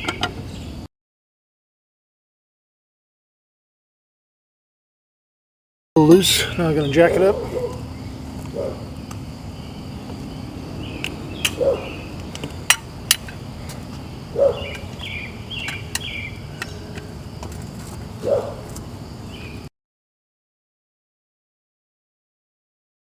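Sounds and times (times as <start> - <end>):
car jack clunks: 0.0 - 0.4, 11.0 - 13.8
birds chirping: 0.0 - 0.9, 6.0 - 19.7.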